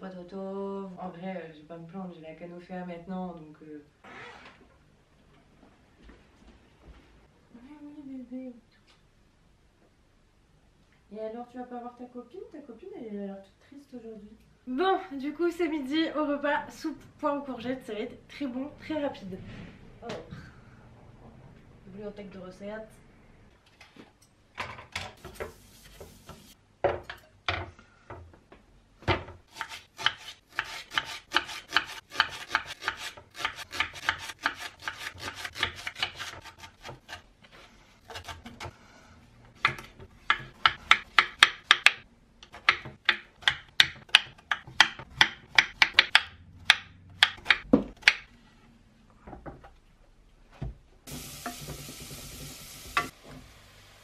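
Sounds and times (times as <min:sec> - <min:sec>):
knife chopping on wooden board: 0:29.5 - 0:37.2, 0:39.6 - 0:48.2.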